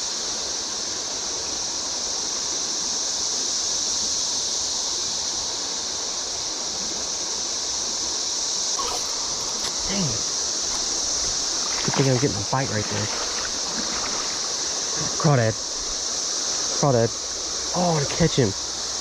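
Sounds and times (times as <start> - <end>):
cicada chorus droning: 0.0 - 19.0
creek water rushing: 8.8 - 19.0.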